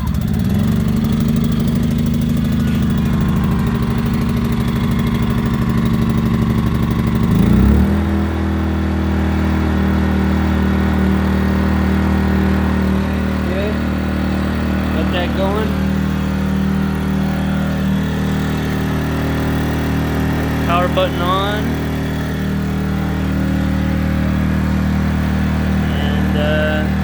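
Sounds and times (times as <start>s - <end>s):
generator engine running: 0.0s - 27.0s.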